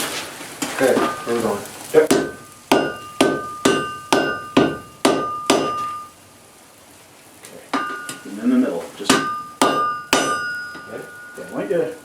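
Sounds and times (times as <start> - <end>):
hammer striking steel on anvil: 2.1 - 6.1, 7.7 - 8.3, 9.0 - 11.6.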